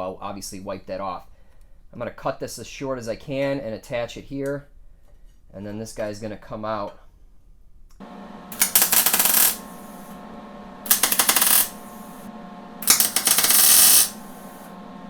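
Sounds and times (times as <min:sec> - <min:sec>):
steady hum: 0:08.0 - 0:15.0
rapid metallic clicking: 0:08.5 - 0:10.1, 0:10.9 - 0:14.7.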